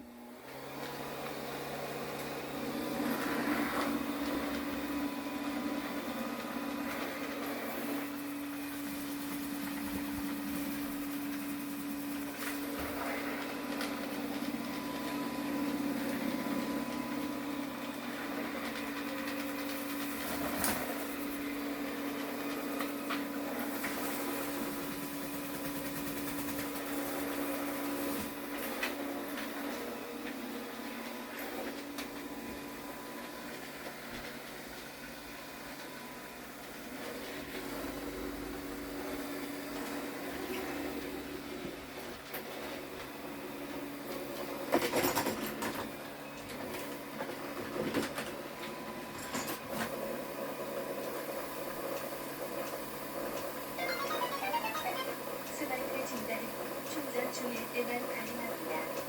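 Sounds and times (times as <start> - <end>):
robot vacuum motor hum: 0.0 - 43.8.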